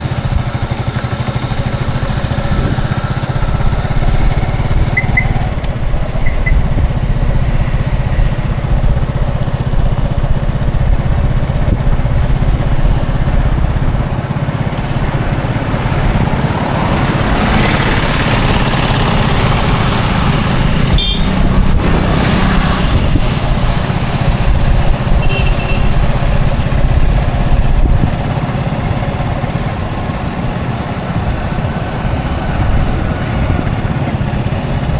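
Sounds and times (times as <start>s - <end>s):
rumble of traffic engines: 0.0s - 34.9s
vehicle passing close: 1.4s - 34.9s
car horn beeps: 4.9s - 5.5s, 20.9s - 21.5s, 25.2s - 26.0s.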